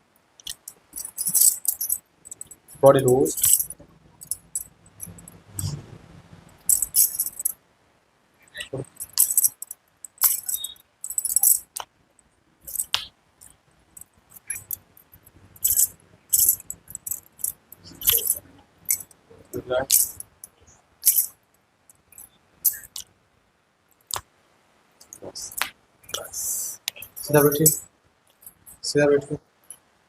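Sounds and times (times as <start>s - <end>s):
rustling and jingling: 0.5s - 5.8s, 6.4s - 7.6s, 8.5s - 11.8s, 12.6s - 21.4s, 22.1s - 23.0s, 26.9s - 28.8s.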